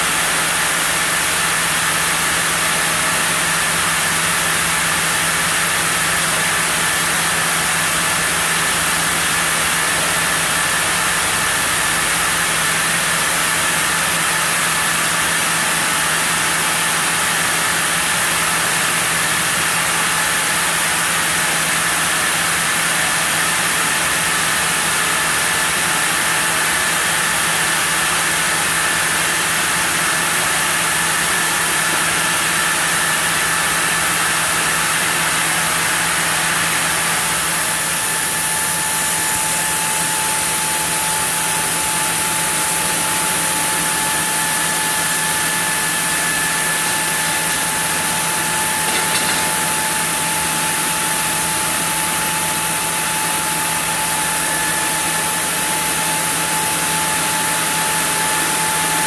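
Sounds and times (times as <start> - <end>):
sawmill machinery drone: 0.0 - 59.0
thin steady whine: 37.1 - 59.0.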